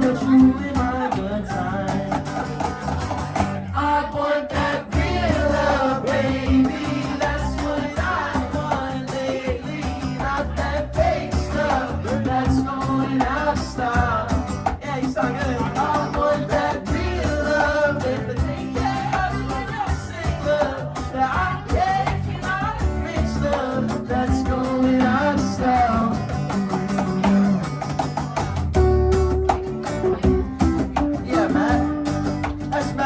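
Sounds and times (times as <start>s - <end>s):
live band music: 15.8s - 33.0s.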